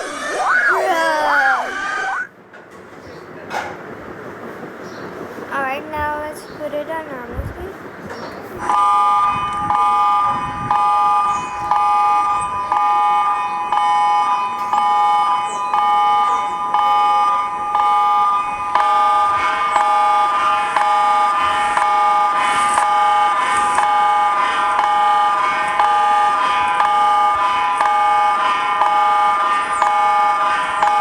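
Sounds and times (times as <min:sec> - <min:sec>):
lower electronic tone: 0:00.0 - 0:02.3
pulsing two-tone electronic alarm: 0:00.0 - 0:02.3, 0:08.6 - 0:31.0.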